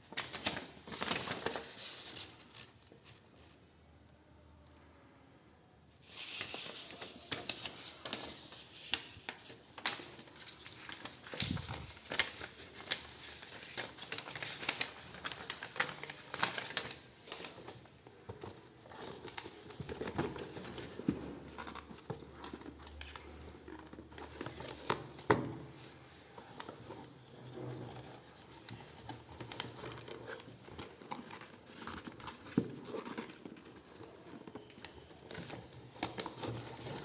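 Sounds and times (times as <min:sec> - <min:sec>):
plastic and cardboard crinkling: 0:00.0 - 0:03.7, 0:06.0 - 0:37.0.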